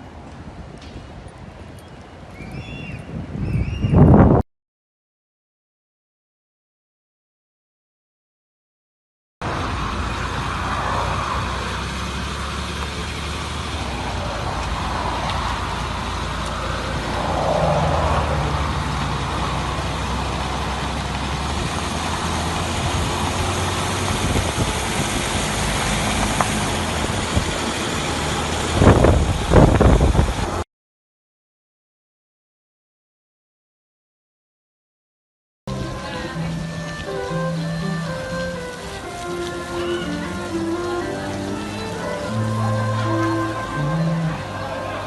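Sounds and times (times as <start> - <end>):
road noise: 0.0 - 4.4, 9.4 - 30.6, 35.7 - 45.0
vehicle engine hum: 9.4 - 30.6, 35.7 - 45.0.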